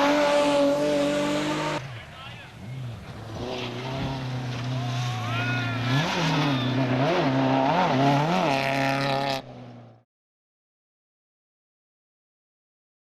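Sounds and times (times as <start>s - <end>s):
race car engine idling and revving: 0.0s - 10.0s.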